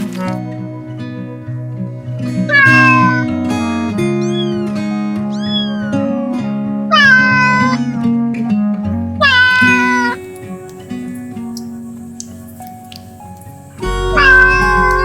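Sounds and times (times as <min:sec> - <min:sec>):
background music: 0:00.0 - 0:15.0
cat meowing: 0:02.5 - 0:03.4, 0:04.0 - 0:06.3, 0:06.9 - 0:08.0, 0:09.2 - 0:10.2, 0:13.8 - 0:15.0.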